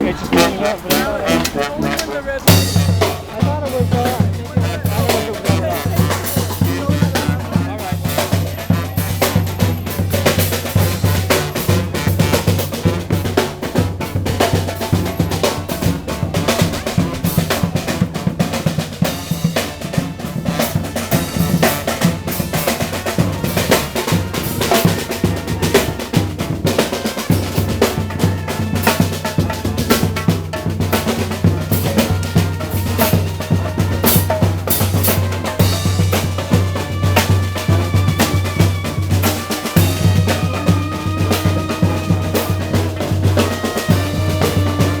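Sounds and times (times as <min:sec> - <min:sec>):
marching band playing: 0:00.0 - 0:45.0
snare and bass drums beating: 0:00.0 - 0:45.0.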